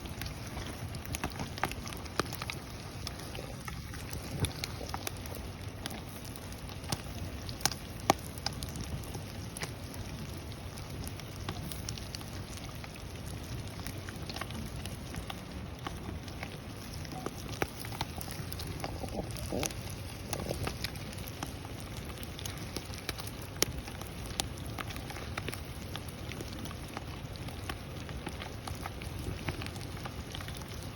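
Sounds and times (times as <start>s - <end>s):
campfire crackling and popping: 0.0s - 30.9s.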